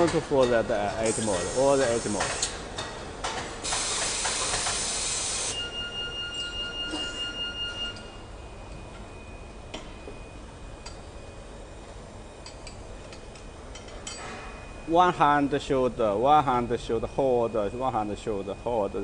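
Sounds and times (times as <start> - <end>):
loud hiss: 1.1 - 2.2, 3.6 - 5.6.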